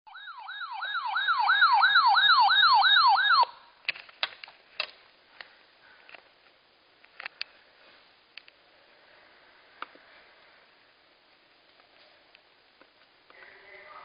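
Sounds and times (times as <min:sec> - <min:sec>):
sweeping siren alarm tone: 0:00.1 - 0:03.7
quiet hiss: 0:03.5 - 0:14.0.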